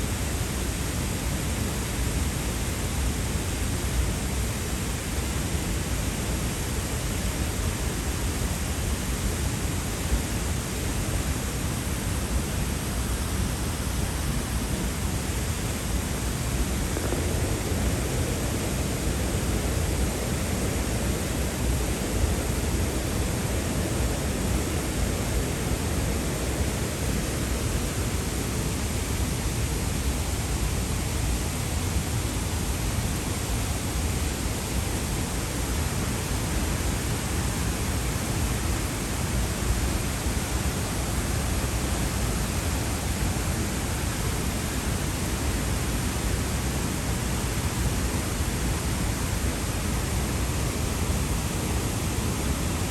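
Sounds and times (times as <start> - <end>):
waterfall roar: 10.5 - 52.9.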